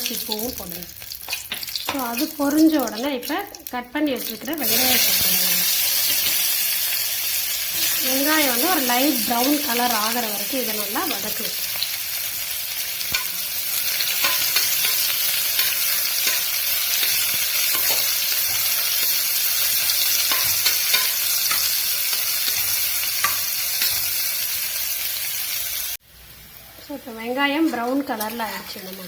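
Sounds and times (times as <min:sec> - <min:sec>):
onions sizzling in oil: 0:00.0 - 0:29.0.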